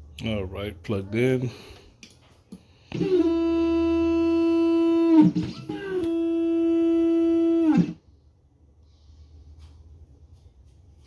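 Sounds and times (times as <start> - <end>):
machine motor whining: 2.9 - 8.0.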